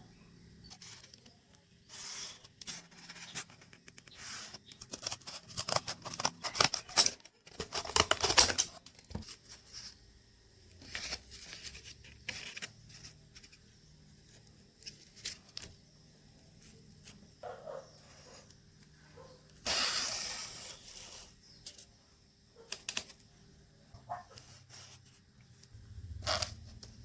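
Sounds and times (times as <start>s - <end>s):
cardboard being cut: 19.7s - 21.3s.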